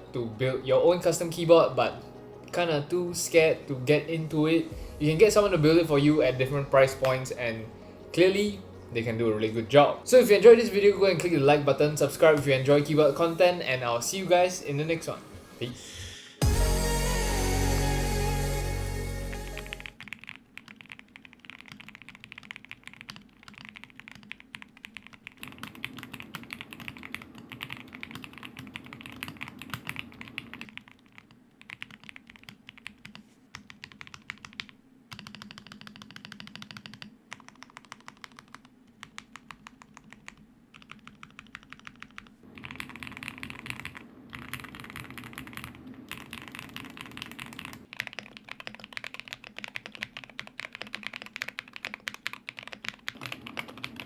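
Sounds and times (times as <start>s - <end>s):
mechanical keyboard typing: 19.9s - 54.0s.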